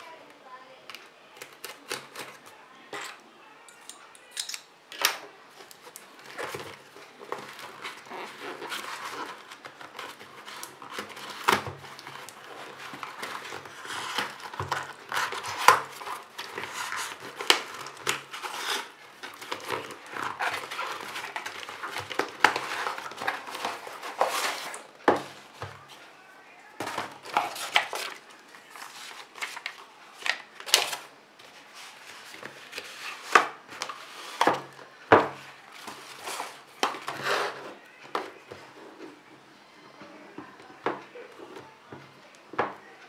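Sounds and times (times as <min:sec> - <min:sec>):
plastic wrap crinkling: 0:05.4 - 0:26.2, 0:26.8 - 0:39.2
cardboard rustling: 0:05.5 - 0:26.2, 0:26.8 - 0:39.4.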